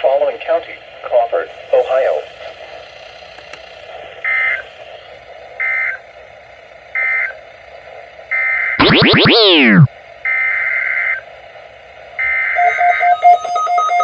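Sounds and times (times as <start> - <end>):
digital data tone bursts: 8.8 - 9.9, 12.5 - 14.0
tones sweeping down in pitch: 8.8 - 9.9, 12.6 - 14.0.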